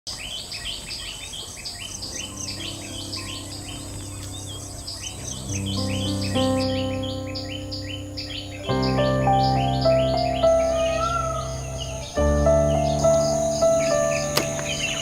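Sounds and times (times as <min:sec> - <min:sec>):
birds chirping: 0:00.1 - 0:15.0
soft sustained music notes: 0:01.7 - 0:15.0
high insect whine: 0:01.8 - 0:06.9.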